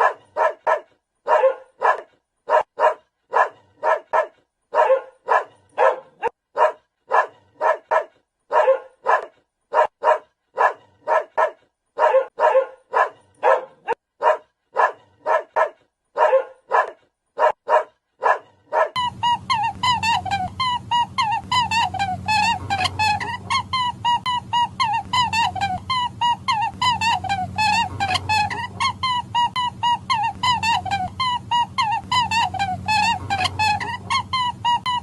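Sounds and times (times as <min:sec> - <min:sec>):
dog barking: 0:00.0 - 0:19.0
steady low hum: 0:19.0 - 0:35.0
warbling wavering call: 0:19.0 - 0:35.0.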